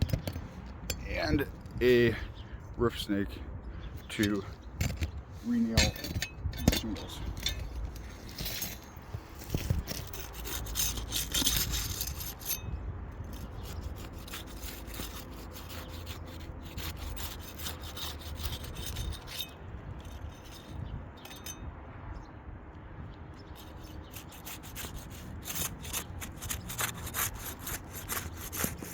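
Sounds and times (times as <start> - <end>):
metal tool scraping shingles: 4.0 - 21.6, 23.5 - 28.9.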